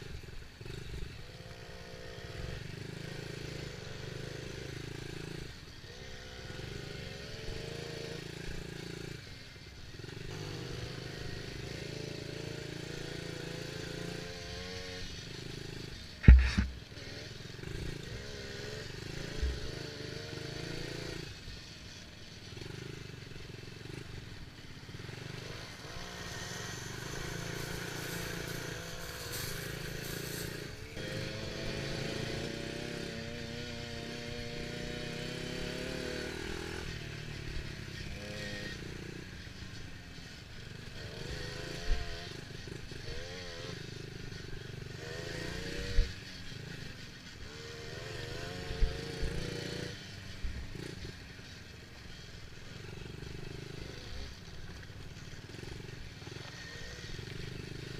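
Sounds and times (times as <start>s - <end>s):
dirt bike engine revving: 0.0s - 57.9s
sharp knocks: 16.2s - 16.8s.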